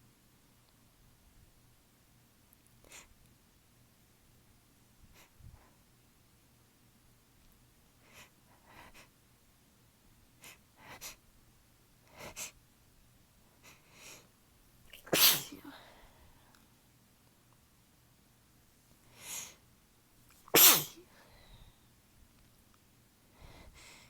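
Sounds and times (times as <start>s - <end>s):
person sneezing loudly: 15.0s - 15.8s, 20.5s - 21.1s
short sharp breaths: 20.6s - 21.9s.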